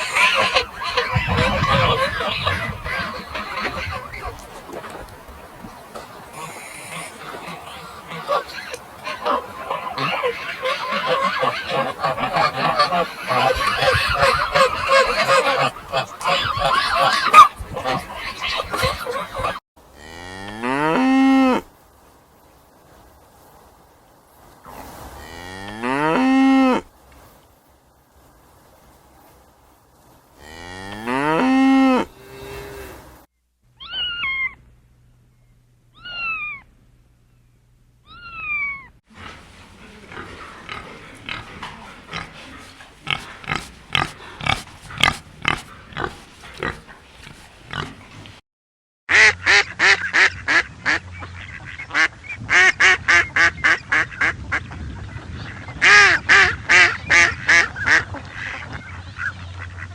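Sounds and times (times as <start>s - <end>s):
farm animal calls: 0.0s - 21.6s, 33.8s - 34.7s, 35.9s - 36.7s, 38.0s - 48.4s.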